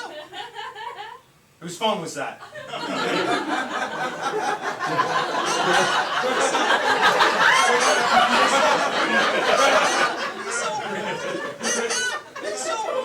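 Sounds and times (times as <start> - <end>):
people laughing and snickering: 0.0 - 1.2, 2.5 - 13.0
indistinct chatter: 4.2 - 13.0.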